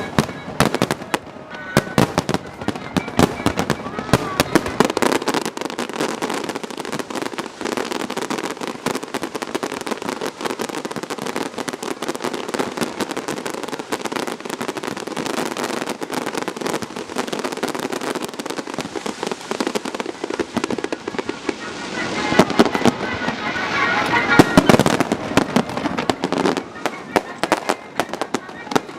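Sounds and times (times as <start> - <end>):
fireworks crackling: 0.0 - 28.9.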